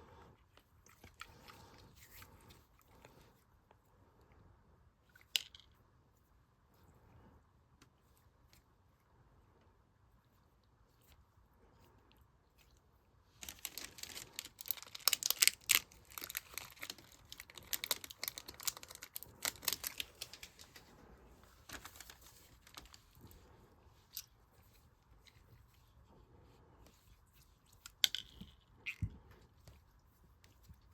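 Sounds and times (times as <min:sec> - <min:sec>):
slime with beads crackling: 0:13.4 - 0:20.8.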